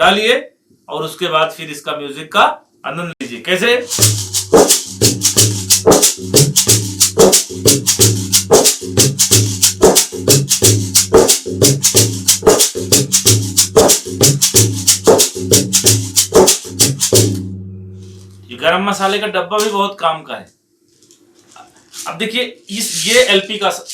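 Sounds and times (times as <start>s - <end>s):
metal tin shaker rattling: 3.8s - 17.3s, 21.9s - 23.9s
backing music with low beat: 3.8s - 18.5s.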